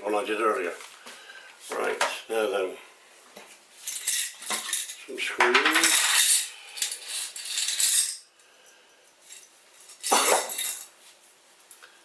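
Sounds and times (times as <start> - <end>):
metal screws rattling in a container: 3.8 - 8.3, 9.2 - 11.0.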